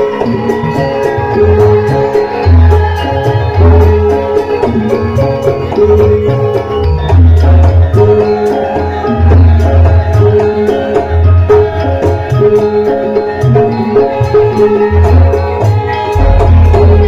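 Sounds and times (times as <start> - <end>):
gamelan music: 0.0 - 17.0
hand drum strokes: 15.6 - 17.0
deep bass boom: 16.2 - 17.0.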